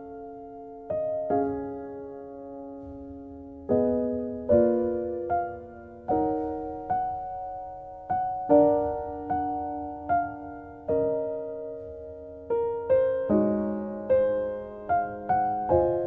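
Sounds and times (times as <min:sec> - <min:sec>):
soft piano chords: 0:00.0 - 0:16.0.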